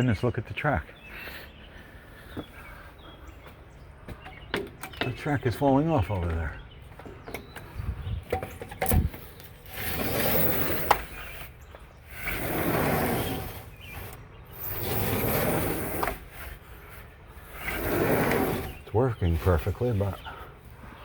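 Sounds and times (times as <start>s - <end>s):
sliding door rumbling on track: 9.7s - 11.5s, 12.1s - 16.6s, 17.4s - 18.9s.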